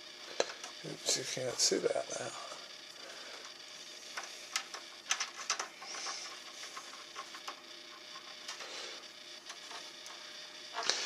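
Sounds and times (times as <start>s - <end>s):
faint steady hiss: 0.0s - 11.0s.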